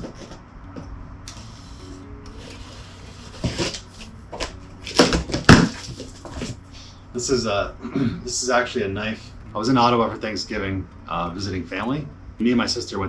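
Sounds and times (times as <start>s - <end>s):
quiet background music: 0.0s - 13.0s
cardboard box rustling: 3.1s - 6.7s.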